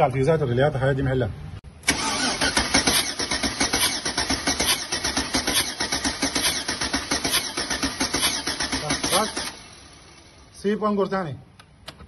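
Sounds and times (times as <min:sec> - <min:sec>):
car engine cranking: 0:01.8 - 0:10.4.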